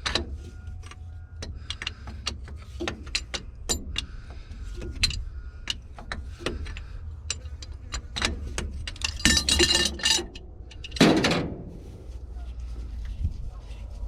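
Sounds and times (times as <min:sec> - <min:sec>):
metal hand tools clinking: 0:08.8 - 0:11.0.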